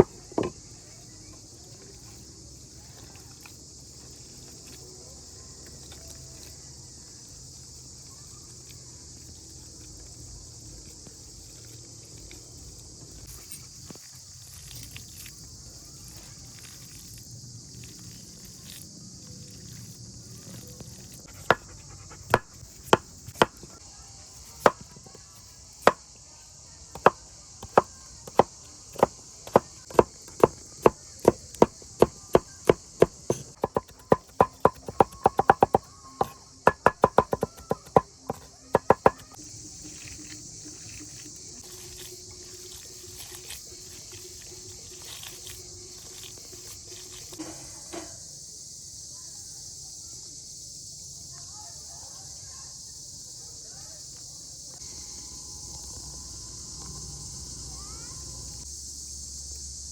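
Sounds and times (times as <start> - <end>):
high insect hiss: 0.0 - 59.9
knife chopping on cutting board: 22.3 - 23.7, 27.0 - 39.4.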